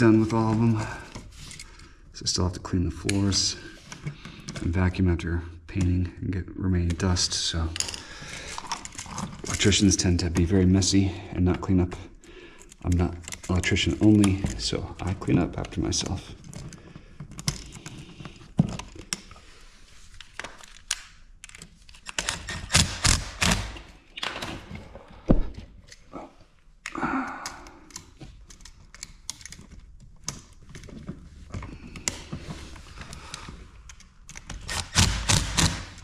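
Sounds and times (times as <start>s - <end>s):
screwdriver tightening screws: 21.4s - 23.8s, 33.9s - 36.0s.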